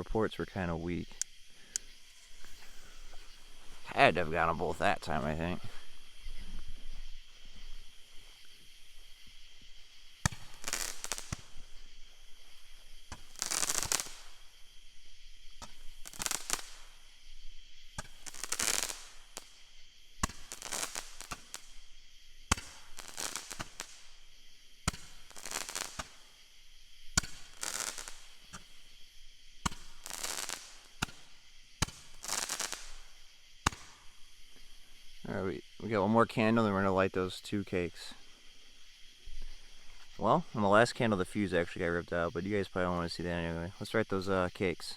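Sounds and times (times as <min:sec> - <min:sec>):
hissing firework bursts: 0:00.0 - 0:35.8
roman candle launch pops: 0:27.1 - 0:28.8, 0:33.7 - 0:34.1.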